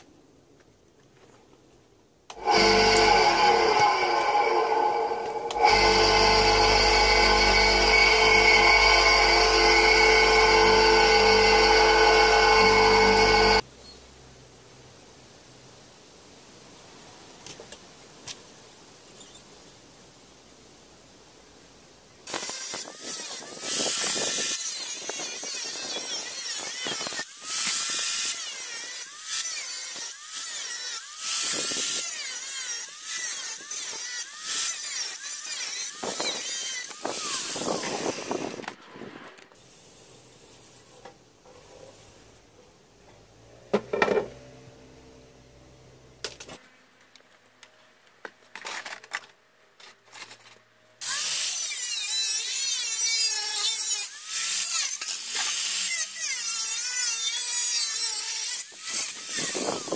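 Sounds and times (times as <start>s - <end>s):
electric tool motor whining: 2.3s - 13.6s, 22.3s - 38.7s
rough grinding noise: 2.3s - 13.6s.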